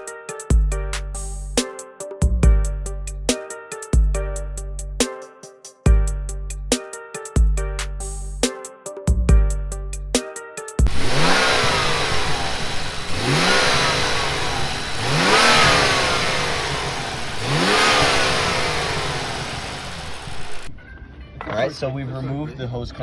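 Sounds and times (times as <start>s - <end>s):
car engine revving: 10.9s - 20.8s.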